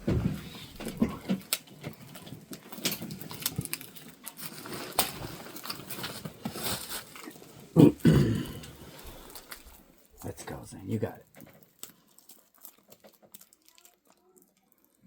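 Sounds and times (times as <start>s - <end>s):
cardboard box torn open: 2.8s - 7.2s
cardboard scraping: 4.4s - 7.6s.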